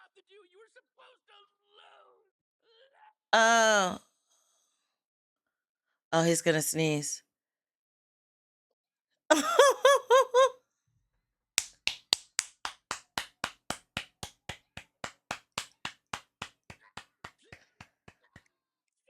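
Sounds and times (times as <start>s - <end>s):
sharp clicks or claps: 11.6s - 18.5s.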